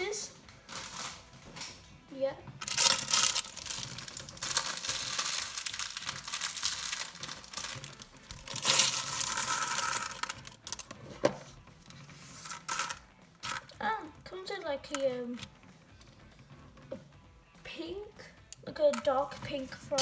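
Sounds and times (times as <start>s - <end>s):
plastic pieces clattering: 0.7s - 1.2s, 2.6s - 11.0s, 12.3s - 13.7s
plastic bag crinkling and tearing: 2.6s - 10.8s.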